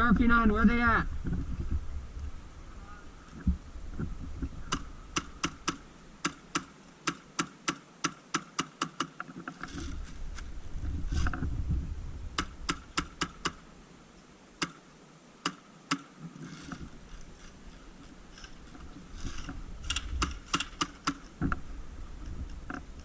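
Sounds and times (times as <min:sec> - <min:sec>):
low rumbling handling noise: 0:00.1 - 0:06.6, 0:09.2 - 0:13.6.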